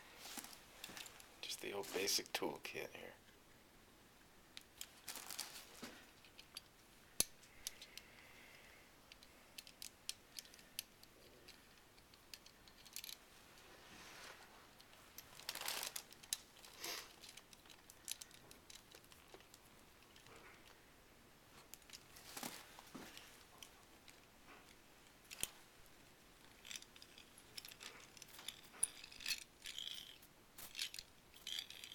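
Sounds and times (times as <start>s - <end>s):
soft rustles: 0.0s - 2.5s, 4.8s - 6.6s, 10.5s - 20.8s, 21.5s - 31.9s
metal tools clicking and clinking: 9.1s - 13.2s, 26.4s - 31.9s.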